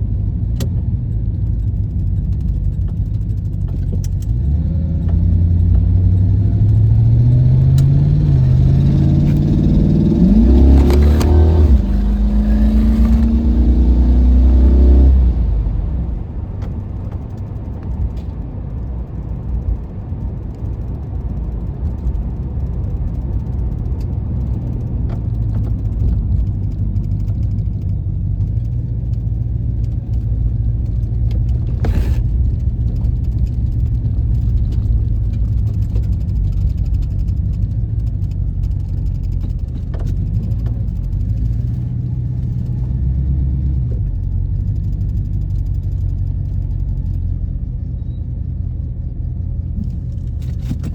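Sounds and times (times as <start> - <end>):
car engine droning: 0.0 - 50.9.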